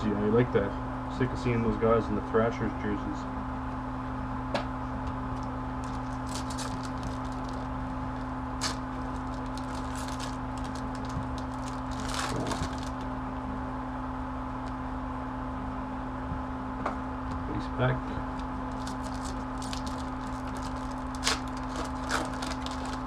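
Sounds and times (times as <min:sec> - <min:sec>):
steady electrical hum: 0:00.0 - 0:23.0
cards being handled: 0:05.3 - 0:13.0, 0:18.4 - 0:23.0
card pack wrappers crinkling: 0:05.3 - 0:13.1, 0:18.3 - 0:23.0.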